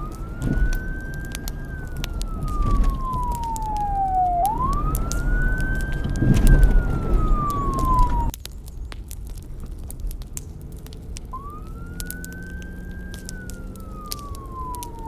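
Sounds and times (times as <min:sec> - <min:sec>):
siren wailing: 0:00.0 - 0:08.3, 0:10.6 - 0:15.0
low rumble: 0:00.0 - 0:08.4
burning plastic crackling: 0:00.0 - 0:15.0.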